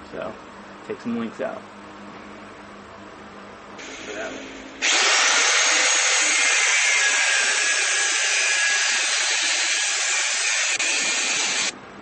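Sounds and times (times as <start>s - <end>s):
power tool hissing whir: 4.8s - 11.8s.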